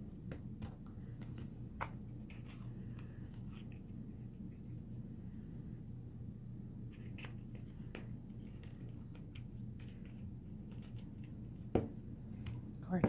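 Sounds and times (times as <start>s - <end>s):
steady low hum: 0.0s - 13.0s
paperboard boxes folded clicking: 0.2s - 3.8s, 6.9s - 12.7s.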